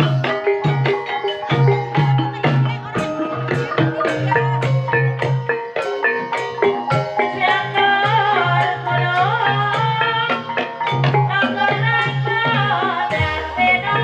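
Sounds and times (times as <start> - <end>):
person singing: 0.0 - 5.5, 6.1 - 14.0
gamelan mallet instruments: 0.0 - 14.0.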